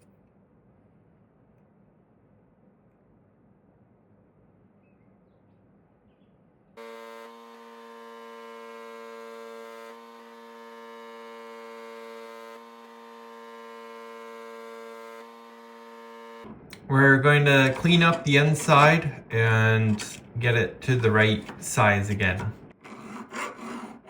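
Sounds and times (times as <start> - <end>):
steady electrical hum: 16.5 - 22.8.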